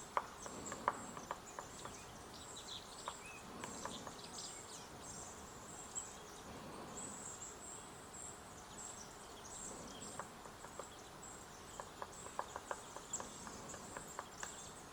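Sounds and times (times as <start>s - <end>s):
woodpecker tapping on wood: 0.0s - 2.2s, 3.0s - 4.4s, 9.9s - 14.8s.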